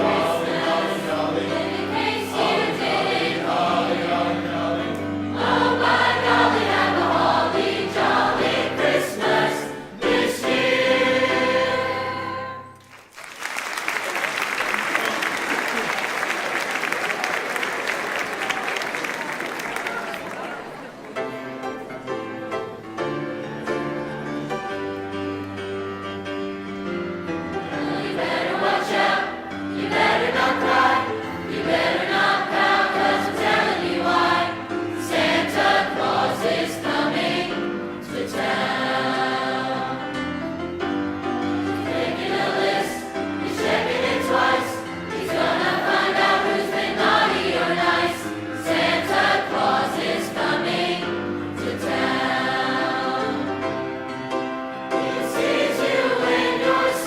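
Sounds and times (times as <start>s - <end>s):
choir singing in harmony: 0.0s - 12.8s, 25.8s - 57.0s.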